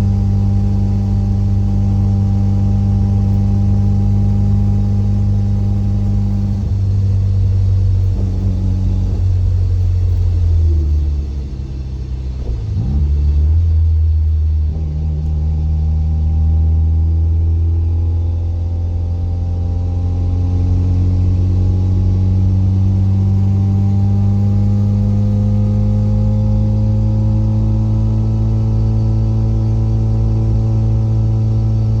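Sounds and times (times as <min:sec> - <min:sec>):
rotary engine accelerating: 0:00.0 - 0:32.0
drivetrain noise: 0:05.6 - 0:14.8.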